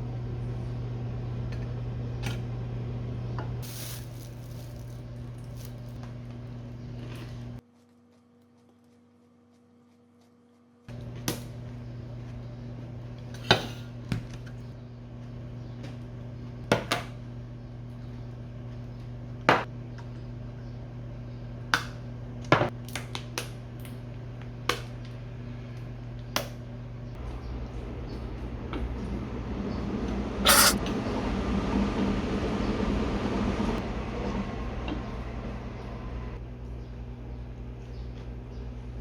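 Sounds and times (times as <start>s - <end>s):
low machine hum: 0.0s - 9.9s, 10.7s - 22.6s, 24.0s - 39.0s.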